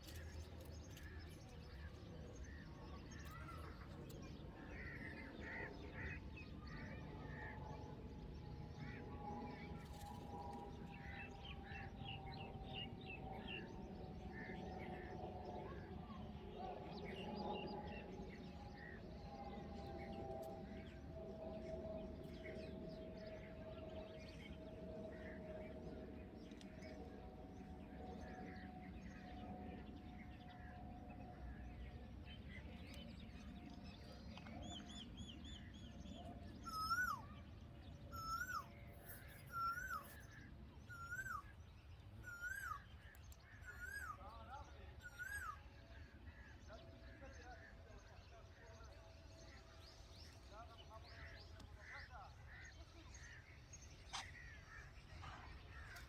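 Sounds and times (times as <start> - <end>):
faint steady drone: 0.0 - 56.0
faint bird chirping: 21.1 - 56.0.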